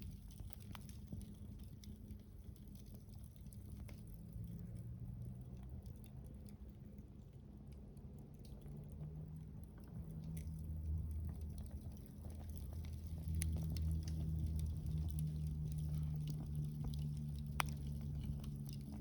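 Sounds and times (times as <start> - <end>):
wood fire crackling: 0.0 - 19.0
low rumble: 9.7 - 19.0.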